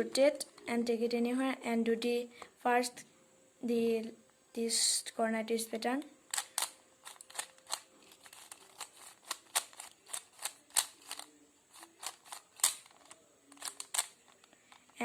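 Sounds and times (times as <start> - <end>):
puzzle cube plastic clicks: 6.3 - 15.0.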